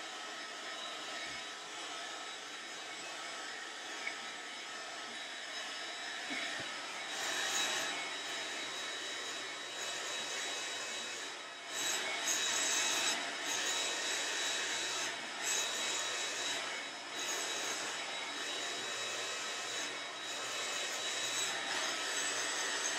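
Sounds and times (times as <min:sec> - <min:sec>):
hair dryer running: 0:00.0 - 0:22.9.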